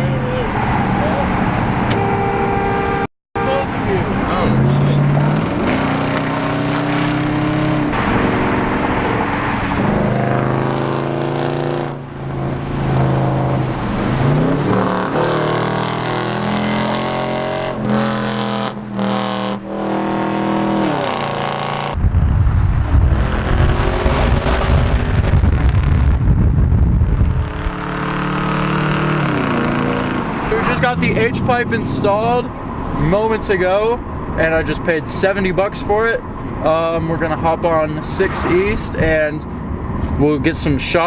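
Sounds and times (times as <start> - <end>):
car engine accelerating hard: 3.6 - 22.0, 22.9 - 26.2, 27.1 - 32.6
heavy low rumble: 21.9 - 28.0.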